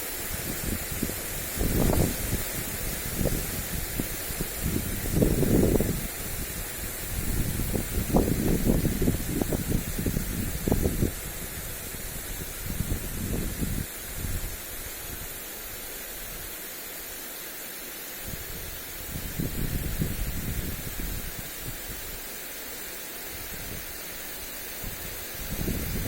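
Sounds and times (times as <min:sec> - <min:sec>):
sprinkler water spray hissing: 0:00.0 - 0:26.0
wind buffeting microphone: 0:00.3 - 0:15.3, 0:18.2 - 0:22.0, 0:24.8 - 0:26.0.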